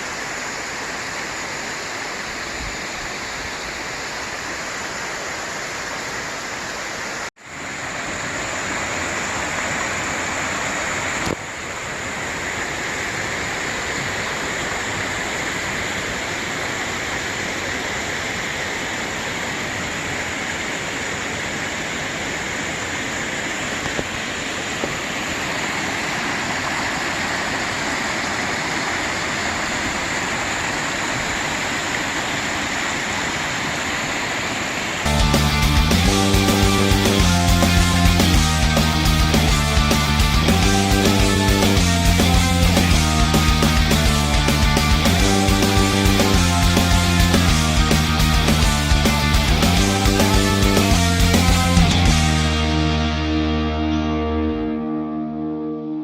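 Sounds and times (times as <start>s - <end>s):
stream rushing over rocks: 0.0s - 35.9s.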